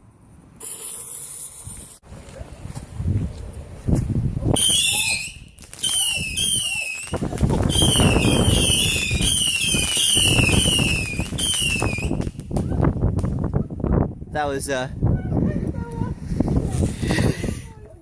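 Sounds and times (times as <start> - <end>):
high warbling whistle: 4.6 - 12.2
fireworks crackling: 4.6 - 13.5.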